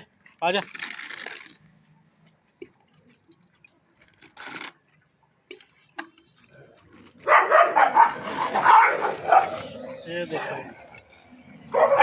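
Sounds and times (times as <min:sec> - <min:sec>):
dogs barking: 0:07.2 - 0:10.0, 0:11.7 - 0:12.0.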